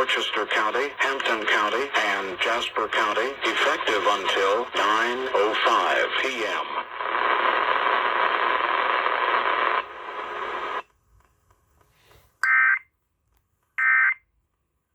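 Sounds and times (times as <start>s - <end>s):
radio receiver hiss: 0.0s - 10.9s.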